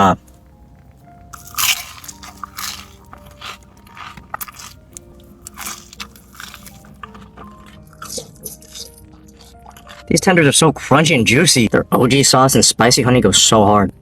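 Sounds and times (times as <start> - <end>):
background music: 0.0 - 14.0
crunching bites into fried chicken: 1.3 - 10.0.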